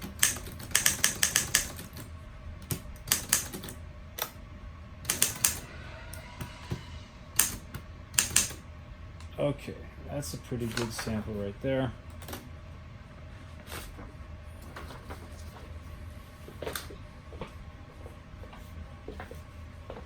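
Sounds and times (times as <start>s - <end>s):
typewriter keystrokes: 0.0s - 4.4s, 5.1s - 5.6s, 7.4s - 8.6s.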